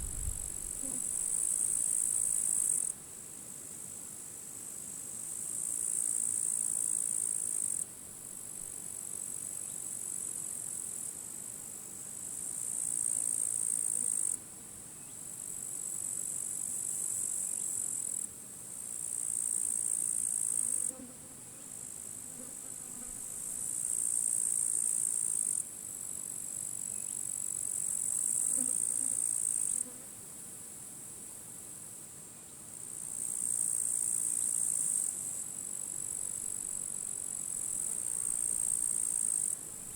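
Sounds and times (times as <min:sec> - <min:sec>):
faint wind: 0:00.0 - 0:03.4
grasshoppers buzzing chirr: 0:16.9 - 0:30.0, 0:32.9 - 0:39.9.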